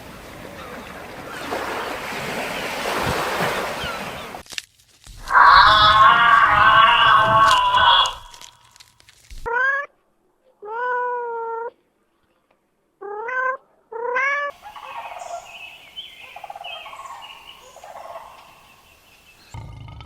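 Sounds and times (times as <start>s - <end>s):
cat meowing: 5.2s - 8.5s
fowl calling: 5.2s - 8.7s, 14.5s - 18.6s
turkey gobble: 5.3s - 8.4s, 14.6s - 15.5s, 16.2s - 18.5s.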